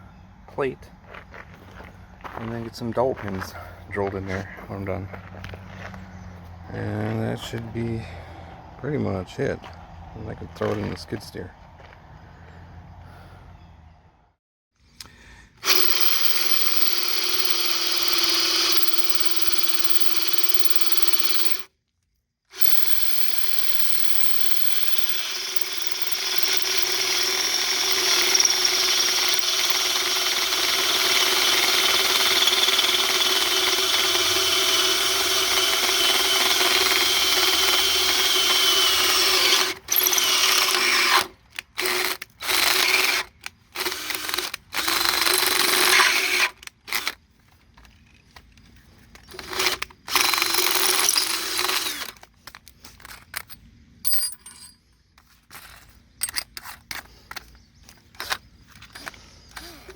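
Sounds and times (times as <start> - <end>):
electric drill running: 15.6 - 21.7, 22.5 - 47.2, 49.3 - 52.3, 58.2 - 59.9.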